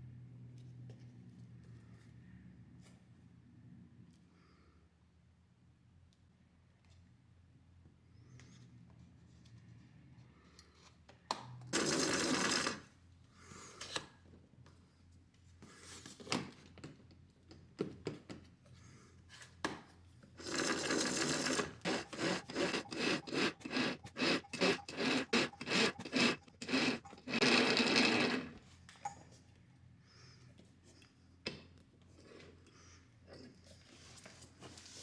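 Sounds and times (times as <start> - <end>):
electric winch motor running: 11.8 - 12.8, 20.4 - 28.6.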